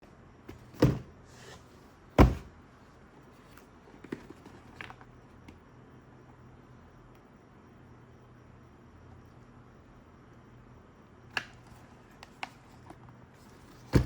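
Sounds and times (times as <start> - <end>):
boxes thudding down: 0.5 - 1.2, 2.2 - 2.5, 13.7 - 14.0.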